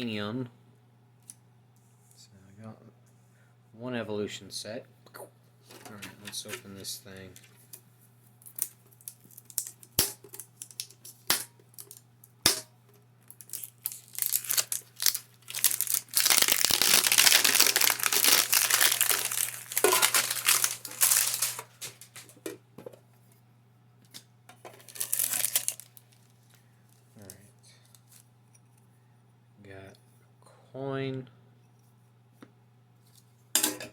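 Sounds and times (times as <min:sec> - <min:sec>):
packaging crinkling: 0:08.4 - 0:12.0, 0:13.2 - 0:22.4, 0:24.7 - 0:28.3.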